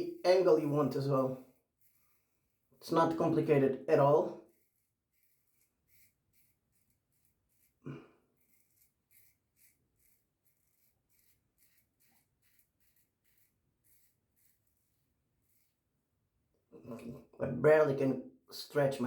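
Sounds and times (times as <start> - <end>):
razor scraping stubble: 4.0 - 15.8.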